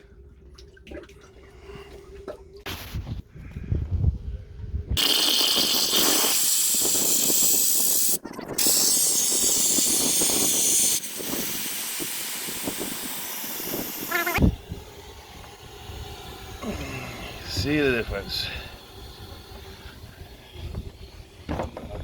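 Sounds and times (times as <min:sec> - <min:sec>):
compressed air hissing through valve: 0:05.0 - 0:21.5.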